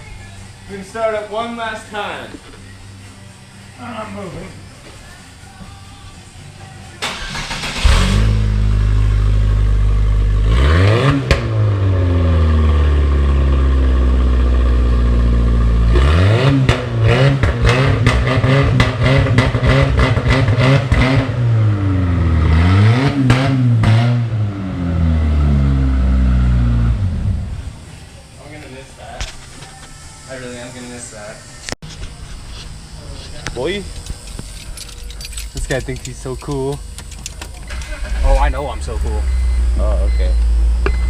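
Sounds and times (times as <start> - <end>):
loud pickup engine revving: 7.3 - 27.7
exhaust pops: 16.5 - 21.4.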